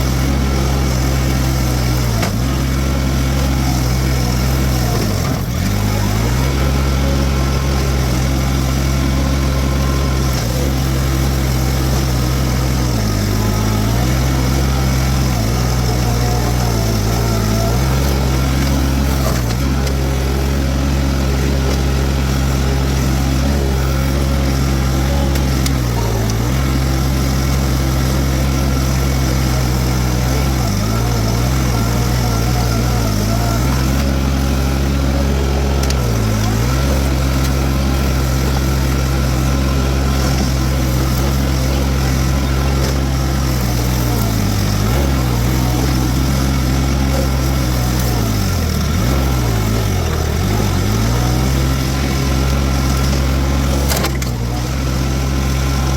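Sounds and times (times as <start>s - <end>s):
diesel engine running: 0.0s - 55.9s
mower cutter humming: 0.0s - 55.9s.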